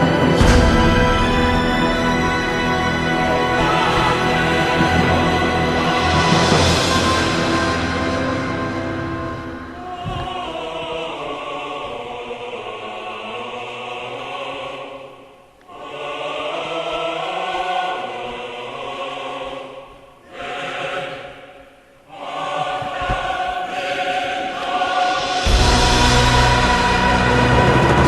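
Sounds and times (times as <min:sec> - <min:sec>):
deep loud music passage: 0:00.0 - 0:13.4, 0:23.2 - 0:28.0
choir singing held chords: 0:00.0 - 0:28.0.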